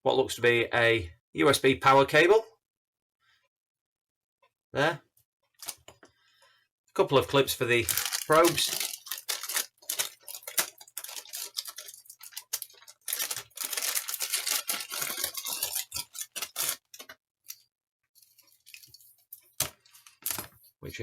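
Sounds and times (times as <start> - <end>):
plastic packaging crinkling: 5.6 - 5.8, 7.1 - 17.6, 18.2 - 20.6.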